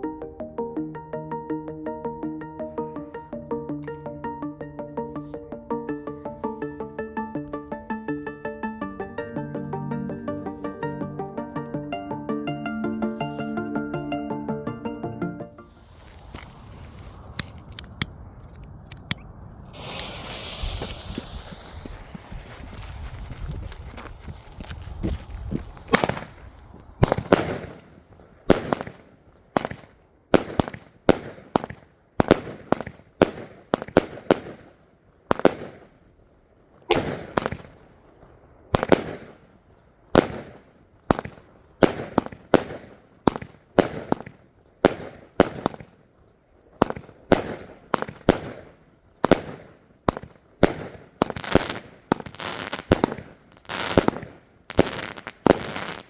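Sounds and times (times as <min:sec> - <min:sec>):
fireworks sharp bangs: 0:19.8 - 0:23.3, 0:27.0 - 0:35.9, 0:36.9 - 0:37.9, 0:38.7 - 0:39.5, 0:40.2 - 0:46.0, 0:46.8 - 0:56.0.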